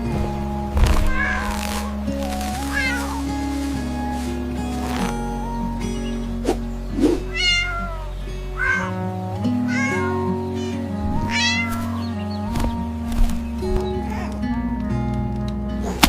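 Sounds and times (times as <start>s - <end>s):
background music: 0.0s - 16.0s
cat meowing: 1.0s - 3.2s, 7.2s - 12.2s.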